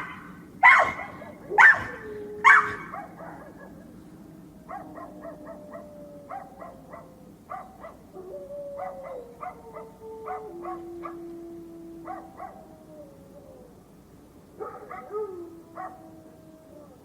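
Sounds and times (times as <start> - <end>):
dogs barking and yelping: 0.0 - 11.2, 12.0 - 12.7, 14.6 - 16.1.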